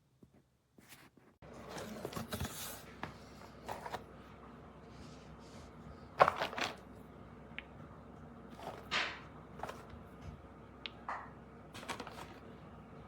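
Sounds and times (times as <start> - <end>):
handling rustling: 6.2 - 6.9, 8.5 - 10.2, 11.8 - 12.5.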